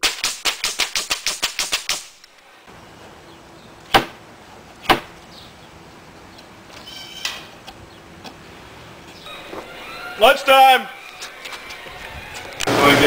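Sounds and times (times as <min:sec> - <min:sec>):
nail gun firing: 0:00.0 - 0:02.2.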